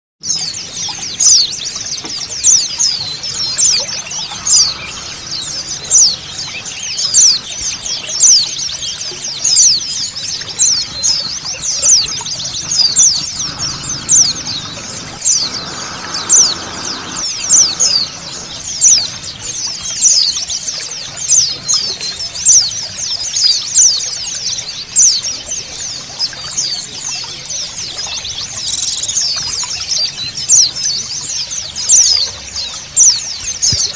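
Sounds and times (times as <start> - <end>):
flock of birds twittering: 0.3 - 33.9
flowing water rushing: 0.4 - 33.9.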